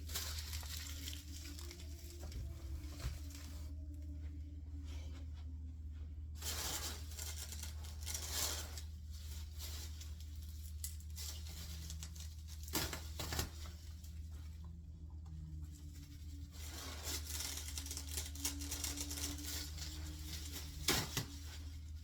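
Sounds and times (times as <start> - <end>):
packing material tearing: 0.0 - 3.7, 6.4 - 13.9, 16.4 - 21.9.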